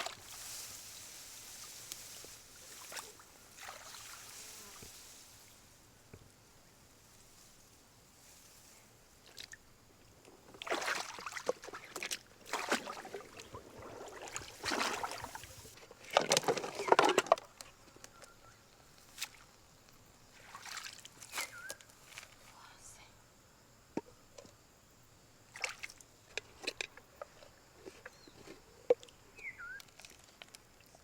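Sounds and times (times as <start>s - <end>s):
water sloshing and splashing: 0.0s - 5.0s, 10.5s - 17.4s, 20.4s - 22.3s, 25.5s - 28.0s.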